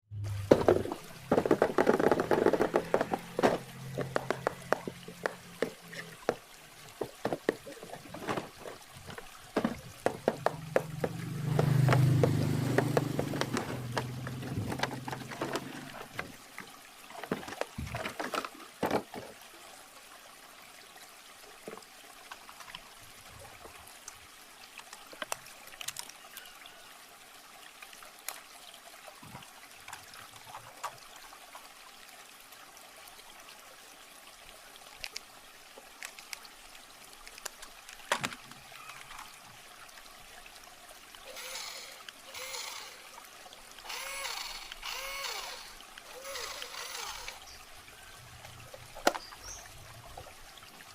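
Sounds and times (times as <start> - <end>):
low hum: 0.1 - 1.4
water trickling: 0.1 - 50.9.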